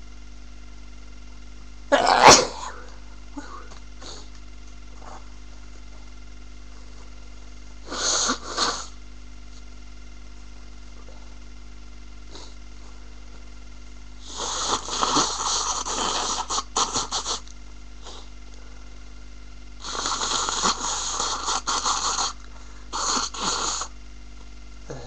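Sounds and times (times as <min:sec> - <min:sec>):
congested breathy nasal noise: 0:07.8 - 0:09.0, 0:14.2 - 0:18.3, 0:19.8 - 0:24.0.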